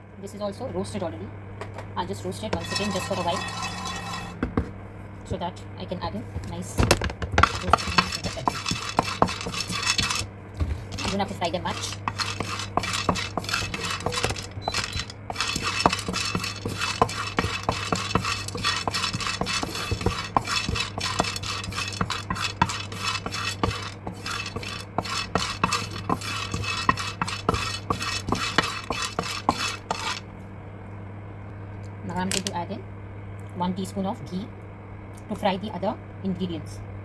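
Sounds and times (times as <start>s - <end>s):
low steady hum: 0.0s - 37.0s
peanuts stirred in dry pan: 2.4s - 4.4s, 7.3s - 30.2s.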